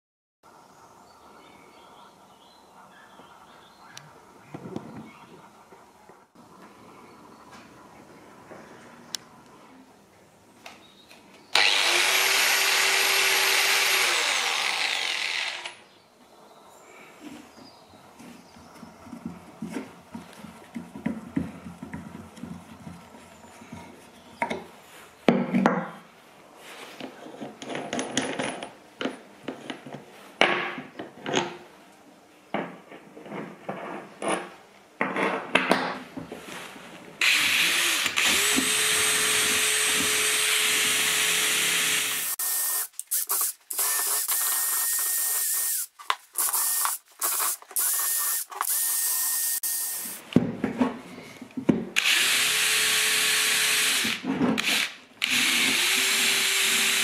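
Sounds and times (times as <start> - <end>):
power tool running: 11.6 - 15.8, 37.2 - 50.2, 52.0 - 57.0.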